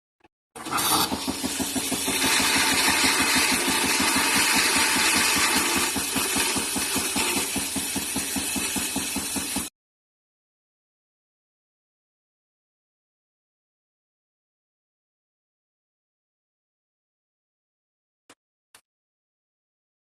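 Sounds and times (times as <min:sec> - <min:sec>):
coffee machine hissing and pulsing: 0:00.6 - 0:09.7.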